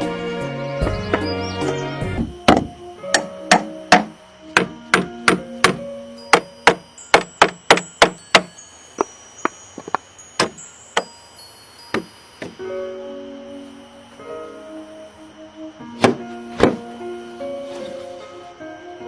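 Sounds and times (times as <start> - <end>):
faint music: 0.0 - 19.0
sharp wooden knocks: 2.2 - 8.6, 16.0 - 16.8.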